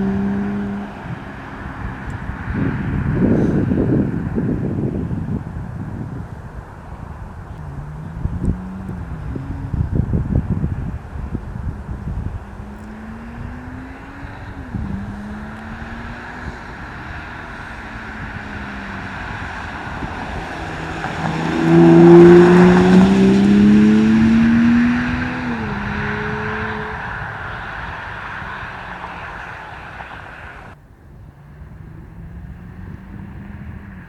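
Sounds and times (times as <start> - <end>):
car engine accelerating: 0.0 - 34.0.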